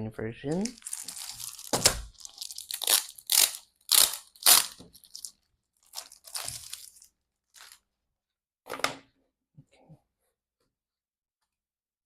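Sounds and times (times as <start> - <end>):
packaging crinkling: 0.5 - 7.8.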